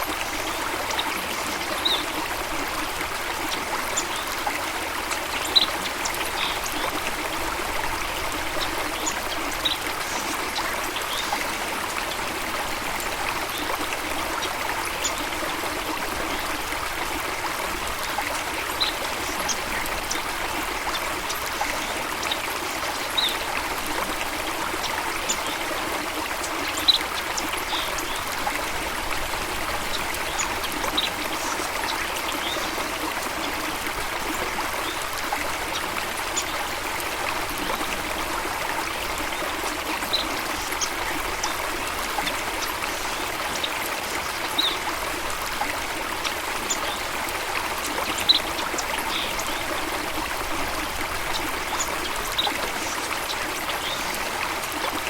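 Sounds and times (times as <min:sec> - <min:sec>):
running water rushing: 0:00.0 - 0:55.0.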